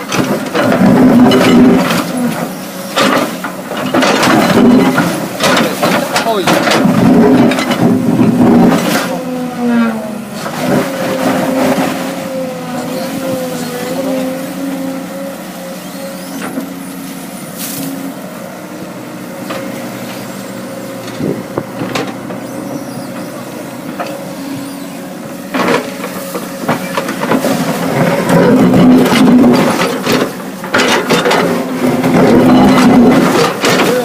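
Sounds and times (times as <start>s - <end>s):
knocks and clanks: 0.0s - 9.2s, 20.9s - 22.5s, 25.2s - 34.0s
excavator diesel engine running: 0.0s - 34.0s.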